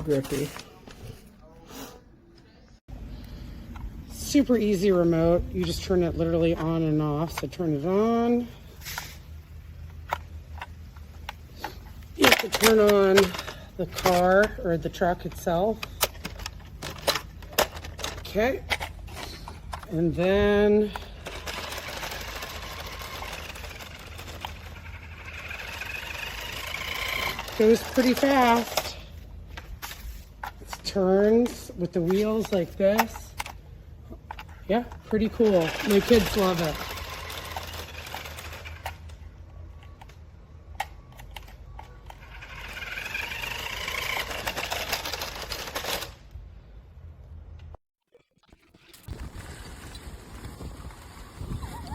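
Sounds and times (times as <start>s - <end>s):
toy electric motor whirring: 11.6s - 29.1s, 34.3s - 39.4s, 41.1s - 46.2s.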